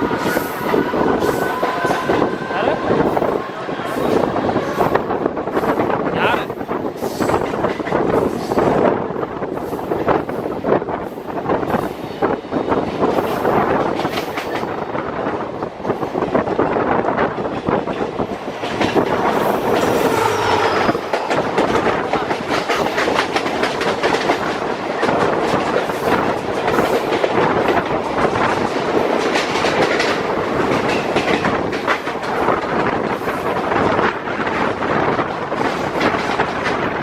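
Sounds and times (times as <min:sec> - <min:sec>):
train wheels clattering over rail joints: 0:03.9 - 0:37.0.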